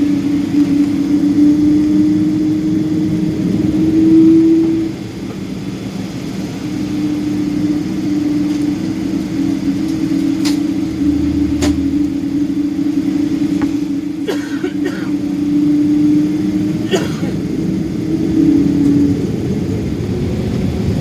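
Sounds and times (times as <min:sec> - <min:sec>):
aircraft engine drone: 0:00.0 - 0:21.0
low rumble: 0:10.7 - 0:14.1.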